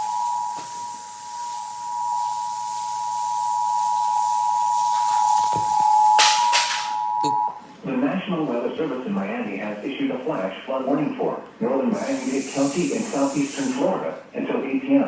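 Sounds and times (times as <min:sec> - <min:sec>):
two-tone alarm tone: 0:00.0 - 0:07.7
constant hiss: 0:00.0 - 0:15.0.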